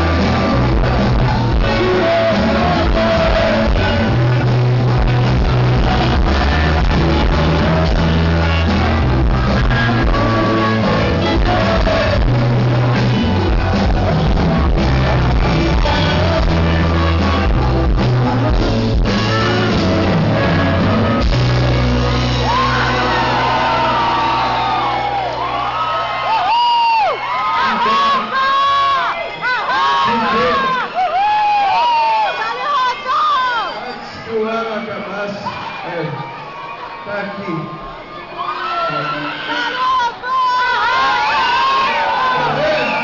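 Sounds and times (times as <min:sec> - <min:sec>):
person singing: 0:00.0 - 0:24.9
heavy bass: 0:00.0 - 0:26.5
drums: 0:00.0 - 0:33.7, 0:39.8 - 0:43.0
live band playing: 0:00.0 - 0:37.0, 0:37.6 - 0:43.0
crowd shouting and cheering: 0:00.0 - 0:43.0.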